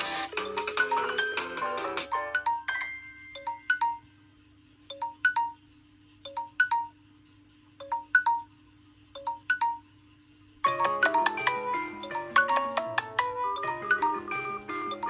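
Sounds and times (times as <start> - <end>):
smartphone ringtone chiming: 0.0 - 4.0, 10.7 - 15.0
busier ringtone melody: 0.0 - 4.1, 6.3 - 6.9, 10.6 - 15.0
faint steady hum: 0.0 - 15.0.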